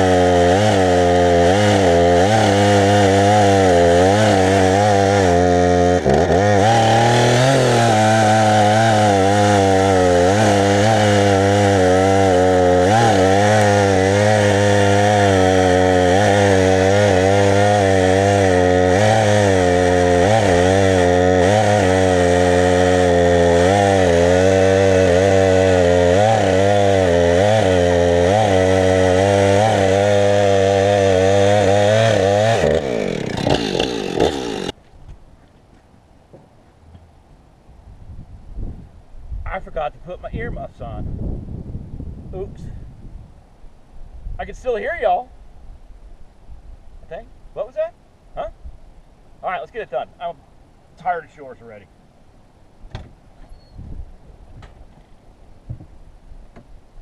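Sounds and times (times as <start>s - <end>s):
chainsaw cutting wood: 0.0s - 34.8s.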